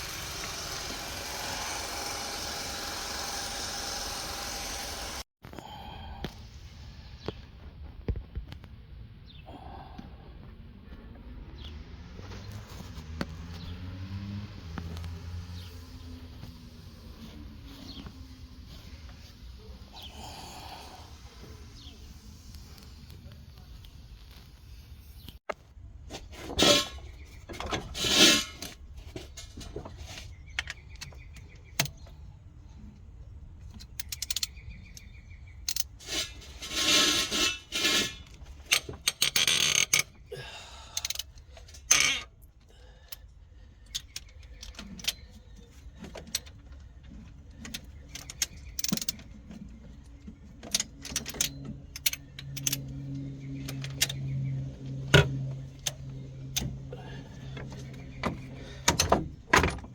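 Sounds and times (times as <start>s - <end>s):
metal tools clinking and scraping: 26.3s - 30.3s, 35.7s - 40.2s, 41.0s - 42.4s, 43.9s - 54.3s.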